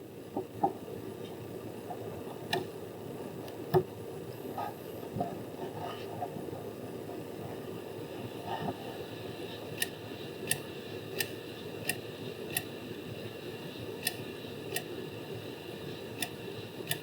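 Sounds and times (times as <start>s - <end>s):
sharp ticks: 11.2s - 12.7s.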